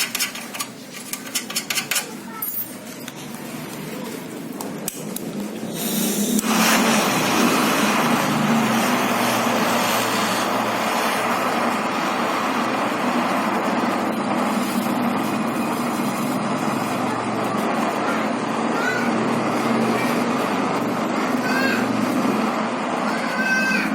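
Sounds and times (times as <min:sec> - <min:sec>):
gas torch flame hissing: 0:03.7 - 0:23.1.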